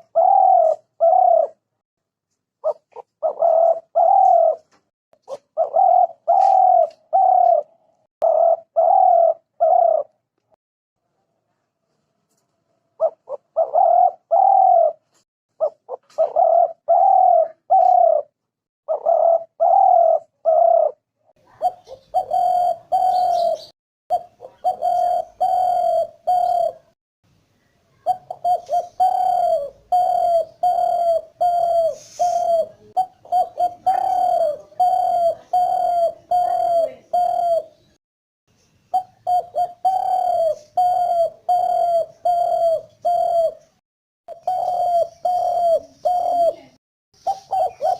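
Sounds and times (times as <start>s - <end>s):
dove cooing: 0.0s - 1.6s, 2.6s - 10.2s, 13.0s - 27.0s, 27.9s - 37.9s, 38.9s - 43.7s, 44.3s - 47.9s.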